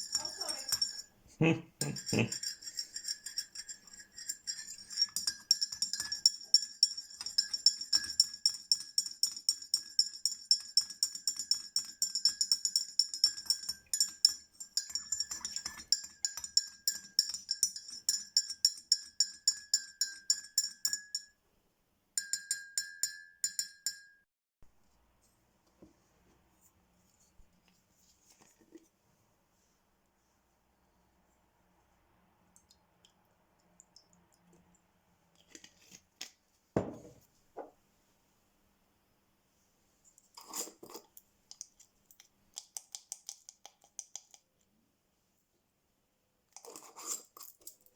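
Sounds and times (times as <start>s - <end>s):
metal spoon clinking in a glass: 0.0s - 1.1s, 1.8s - 21.4s, 22.2s - 24.2s.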